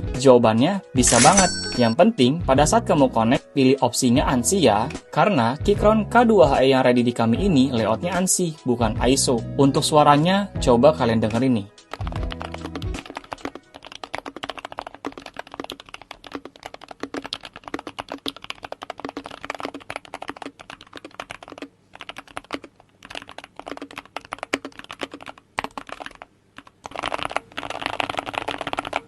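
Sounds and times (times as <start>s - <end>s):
mechanical keyboard typing: 11.8s - 29.0s.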